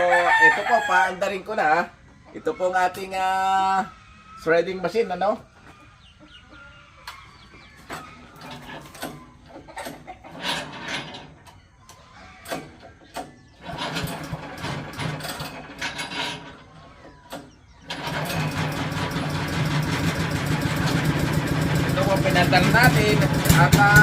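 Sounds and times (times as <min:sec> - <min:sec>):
shredder engine starting and idling: 0:12.6 - 0:24.0.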